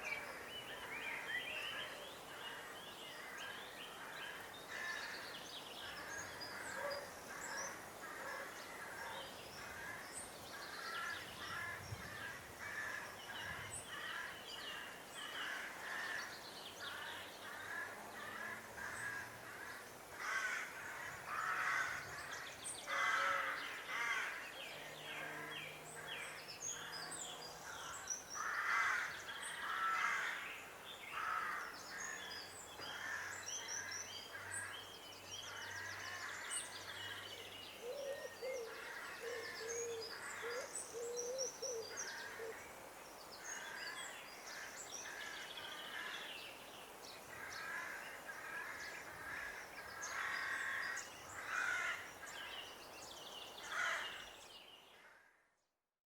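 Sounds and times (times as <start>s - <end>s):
birds calling harshly: 47.2s - 52.8s, 53.5s - 54.4s.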